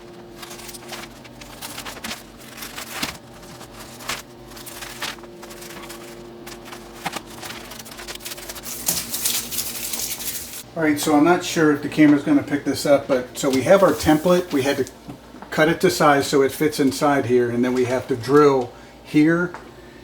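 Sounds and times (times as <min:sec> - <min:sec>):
paper crinkling: 0:00.0 - 0:10.6, 0:13.4 - 0:14.9.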